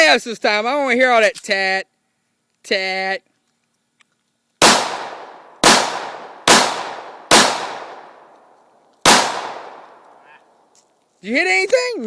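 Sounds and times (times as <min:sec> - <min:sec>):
pistol shots with echo: 0:04.6 - 0:08.2, 0:09.0 - 0:10.1.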